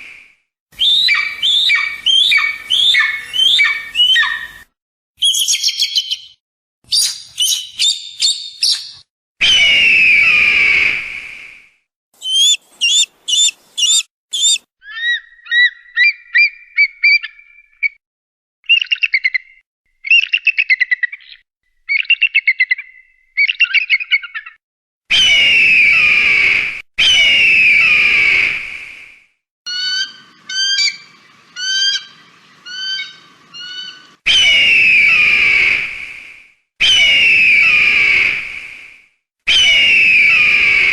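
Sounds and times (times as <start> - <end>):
harsh falling bird screams: 0.8 - 4.6, 9.4 - 11.5, 12.2 - 16.5, 25.1 - 29.0, 29.7 - 40.9
sharp whistled bird notes: 0.8 - 11.5, 12.2 - 18.0, 29.7 - 36.0, 36.8 - 38.4
bird chattering: 12.2 - 15.7.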